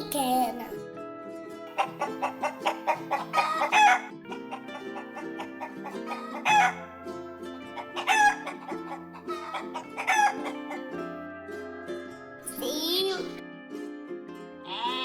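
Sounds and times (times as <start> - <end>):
background music with plucked notes: 0.0 - 15.0
chicken calling: 1.7 - 10.8, 14.6 - 15.0.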